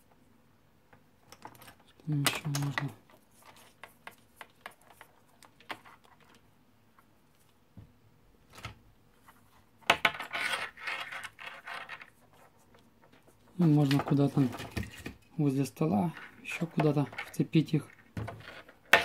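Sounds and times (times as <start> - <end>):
hands handling plastic and cables: 0.9 - 7.6, 8.4 - 15.3.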